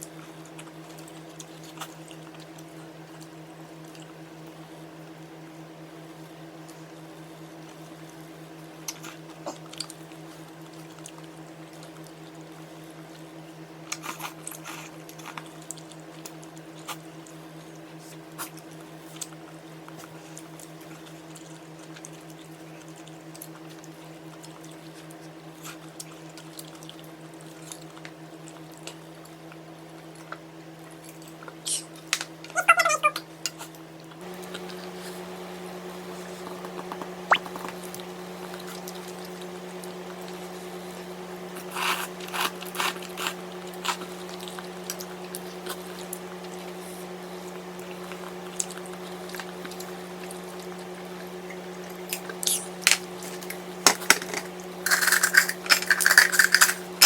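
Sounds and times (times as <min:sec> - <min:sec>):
steady hum: 0:33.3 - 0:57.0
squishy mouth and liquid sounds: 0:36.2 - 0:39.5.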